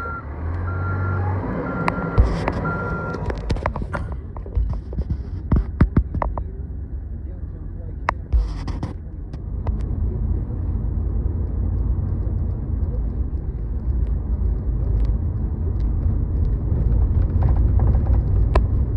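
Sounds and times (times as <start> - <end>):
vehicle engine running: 0.0 - 18.9
faint small clicks: 11.4 - 17.4.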